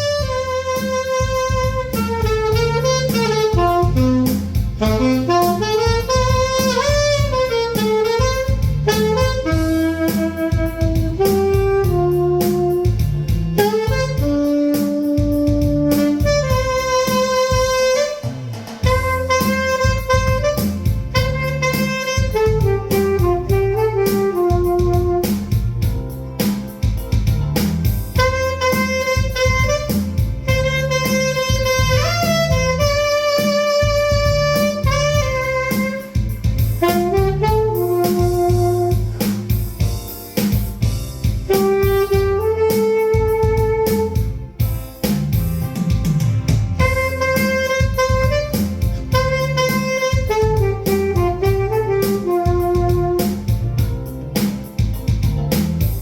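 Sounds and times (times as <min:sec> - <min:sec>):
saxophone playing slow melody: 0:00.0 - 0:54.2
backing track with bass and beat: 0:00.0 - 0:56.0.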